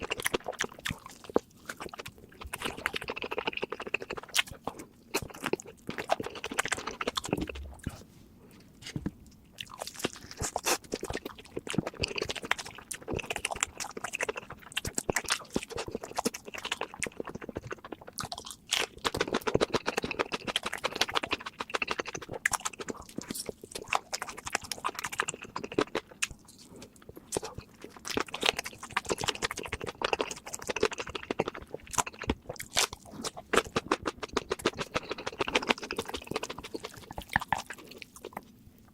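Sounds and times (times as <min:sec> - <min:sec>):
chewing and crunching food: 0:00.0 - 0:38.9.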